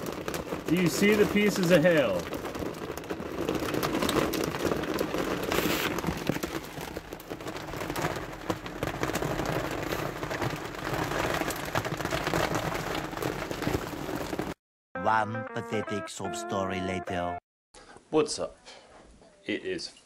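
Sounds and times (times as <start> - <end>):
hail hitting surfaces: 0.0 - 14.6.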